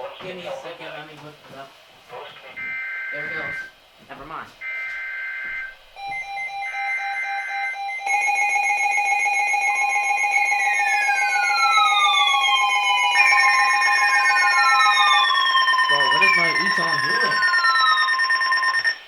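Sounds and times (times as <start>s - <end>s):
weather radio alarm beeping: 2.6s - 3.7s, 4.6s - 19.0s
steady alarm tones: 2.6s - 3.8s, 4.6s - 19.0s
downward sweeping tone: 10.3s - 18.9s.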